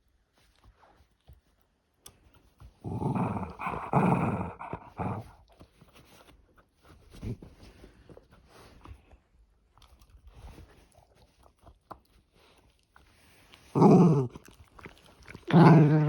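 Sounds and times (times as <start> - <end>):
dog growling: 2.8 - 5.4, 13.7 - 16.0.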